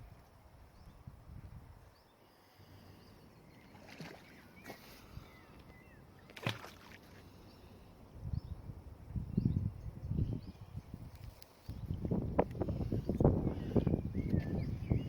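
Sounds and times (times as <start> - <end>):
water splashes: 3.6 - 5.2, 6.2 - 7.4.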